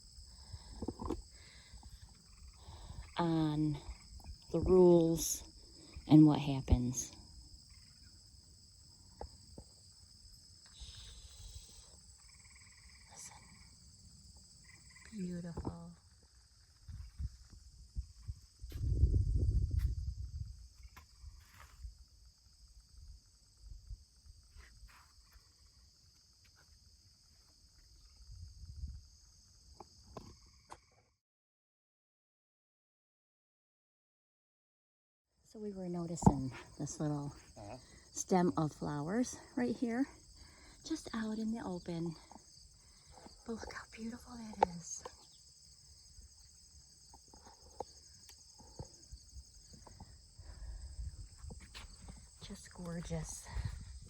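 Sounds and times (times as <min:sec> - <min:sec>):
insects trilling: 0:00.0 - 0:31.1, 0:35.5 - 0:54.0
wind rumble on microphone: 0:16.7 - 0:22.1, 0:28.0 - 0:29.4, 0:47.6 - 0:54.0.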